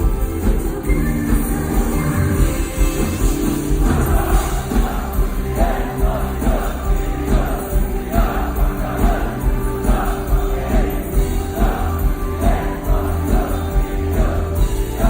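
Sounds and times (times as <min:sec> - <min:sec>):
backing track with steady beat: 0:00.0 - 0:15.0
group singing pop song live: 0:03.1 - 0:15.0.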